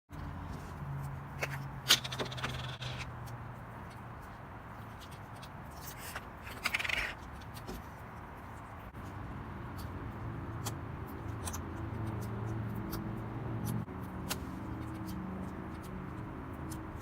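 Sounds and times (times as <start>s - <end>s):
crackly scrape: 0.5s - 3.3s, 4.2s - 9.0s.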